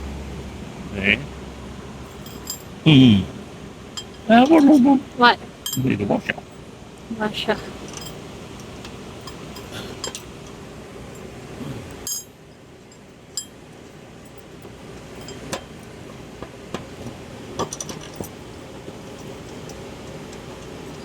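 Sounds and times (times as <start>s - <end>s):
low background hum: 0.0s - 21.0s
metal washers and bolts clinking: 2.1s - 2.8s, 4.0s - 5.0s, 5.6s - 6.6s, 7.6s - 21.0s.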